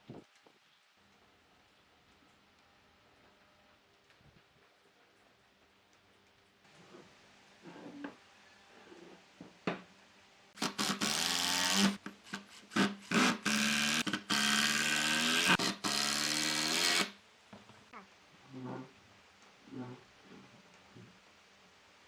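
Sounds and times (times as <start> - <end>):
power tool motor humming: 10.6 - 17.2.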